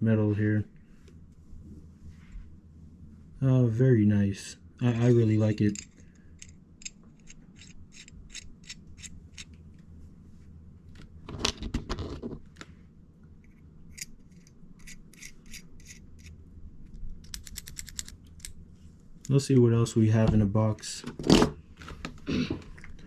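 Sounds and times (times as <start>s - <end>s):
mechanical pencil clicking: 13.9s - 16.3s, 17.2s - 18.5s.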